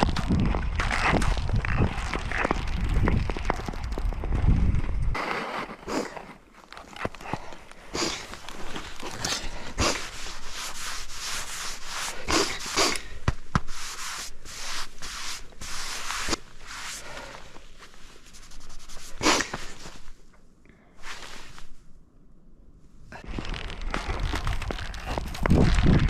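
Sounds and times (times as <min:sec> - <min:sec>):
skate blades scraping on ice: 0:00.0 - 0:04.3, 0:05.2 - 0:07.3, 0:07.9 - 0:17.3
sharp clicks on ice: 0:00.0 - 0:04.4.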